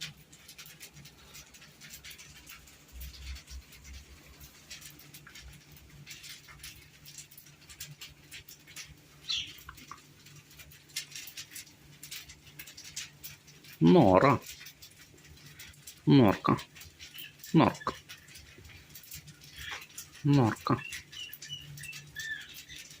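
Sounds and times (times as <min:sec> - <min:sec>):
faint ticks and taps: 0:00.0 - 0:13.8.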